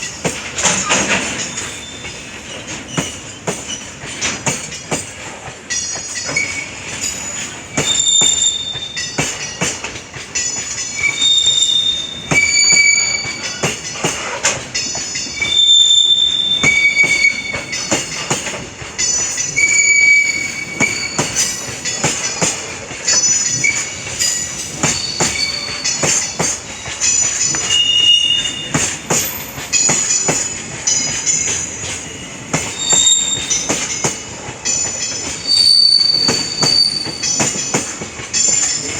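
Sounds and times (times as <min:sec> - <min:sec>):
train wheels squealing: 0:00.0 - 0:38.9
wheels clacking on rails: 0:00.0 - 0:38.9.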